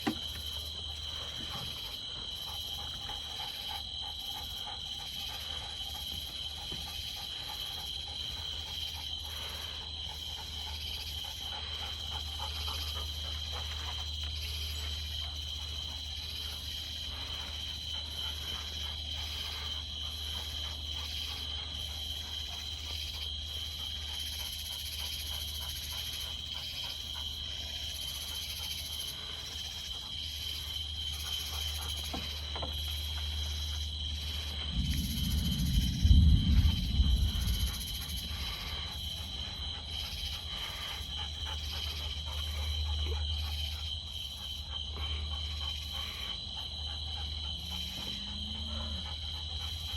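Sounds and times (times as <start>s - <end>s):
insects chirring: 0.0s - 49.9s
low hum: 32.3s - 43.3s
low rumble: 33.0s - 42.6s.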